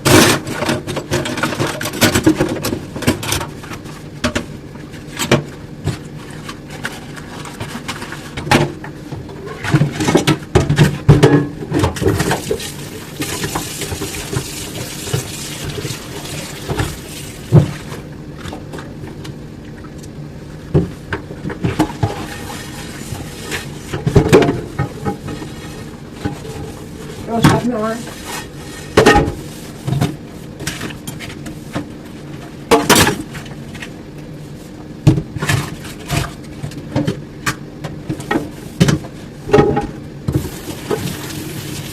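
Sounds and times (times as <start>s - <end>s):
tap water running: 12.1s - 17.9s, 40.3s - 41.9s.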